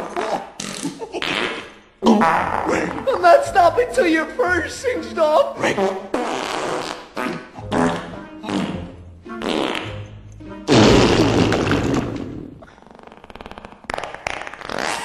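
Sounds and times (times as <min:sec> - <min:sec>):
fart sounds: 0:00.0 - 0:03.1, 0:05.7 - 0:15.0
music: 0:02.2 - 0:12.6.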